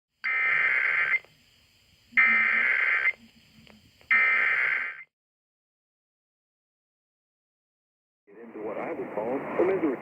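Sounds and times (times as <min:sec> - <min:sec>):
digital data tone bursts: 0:00.2 - 0:01.3, 0:02.1 - 0:03.3, 0:04.1 - 0:05.1.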